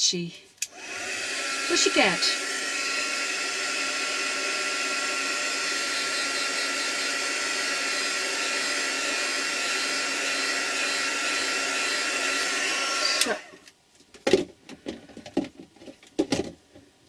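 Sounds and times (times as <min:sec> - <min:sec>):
electric dryer blowing: 0:00.7 - 0:13.6.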